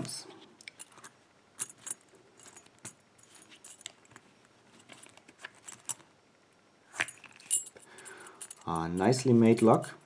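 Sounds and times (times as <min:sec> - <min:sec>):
metal padlock clicks and clinks: 0:07.0 - 0:10.0.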